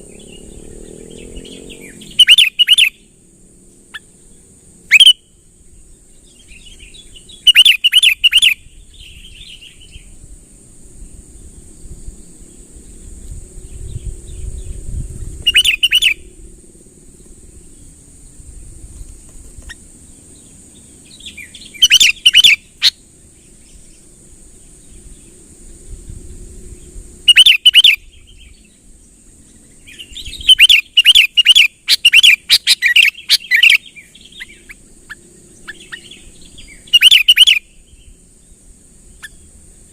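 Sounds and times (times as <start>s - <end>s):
bulbul singing: 0.0s - 3.2s, 3.9s - 10.2s, 13.8s - 16.4s, 19.6s - 25.3s, 27.3s - 39.9s
steady high hiss: 0.0s - 39.9s.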